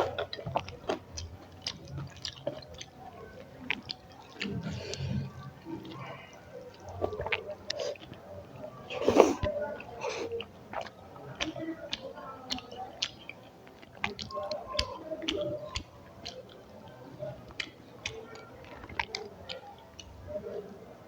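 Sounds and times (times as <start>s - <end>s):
wet mouth clicks and smacks: 0.0s - 3.0s, 6.7s - 8.2s, 9.0s - 16.7s, 17.5s - 20.2s
person chewing food: 0.0s - 20.3s.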